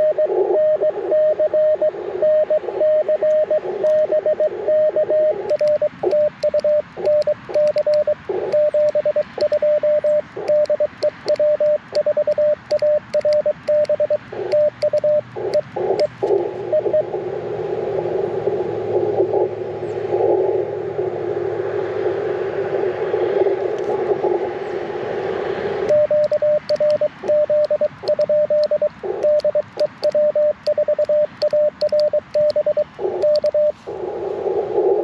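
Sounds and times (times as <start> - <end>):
morse code tone: 0.0 - 16.1, 25.9 - 33.8
receiver hiss: 0.0 - 35.0.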